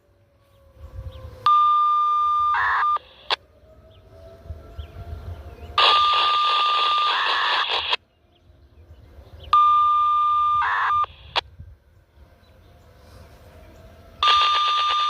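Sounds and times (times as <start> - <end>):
radio beep tone: 1.5 - 3.4, 5.8 - 8.0, 9.6 - 11.4, 14.2 - 15.0
warbling data burst: 5.8 - 8.0, 14.2 - 15.0.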